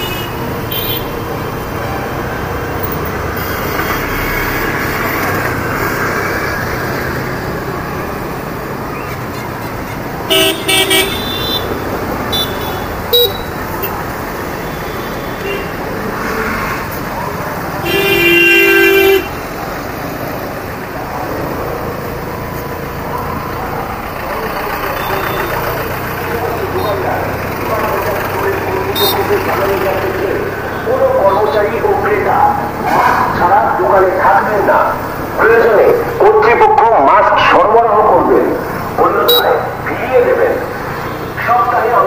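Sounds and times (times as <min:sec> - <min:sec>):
vehicle horns honking: 0:00.0 - 0:01.3, 0:02.8 - 0:06.3, 0:09.2 - 0:16.4, 0:17.8 - 0:19.6, 0:24.8 - 0:27.1, 0:27.7 - 0:29.8, 0:39.0 - 0:39.8
road and traffic noise: 0:00.0 - 0:42.0
scooter engine running: 0:17.0 - 0:32.8.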